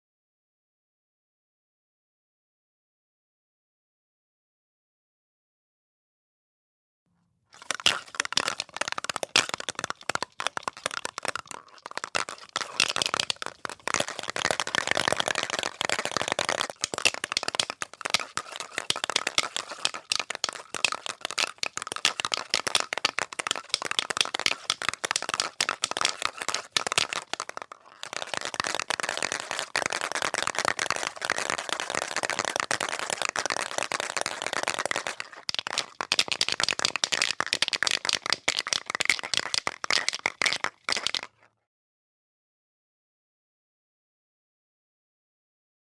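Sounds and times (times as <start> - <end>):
spray can ball rattling: 7.6 - 41.4.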